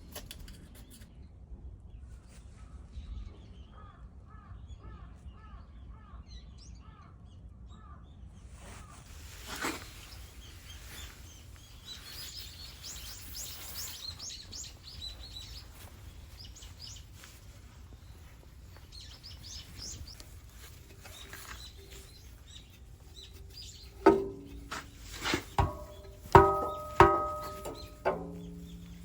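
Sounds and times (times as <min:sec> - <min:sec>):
small birds chirping: 0:00.6 - 0:29.0
sharp knock: 0:24.1 - 0:29.0.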